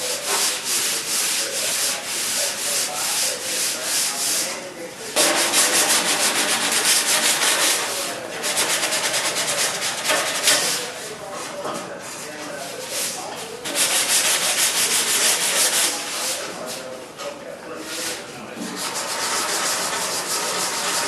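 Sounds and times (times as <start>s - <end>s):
sandpaper rubbing: 0.0s - 4.5s, 5.2s - 10.8s, 12.9s - 16.8s, 17.8s - 21.0s.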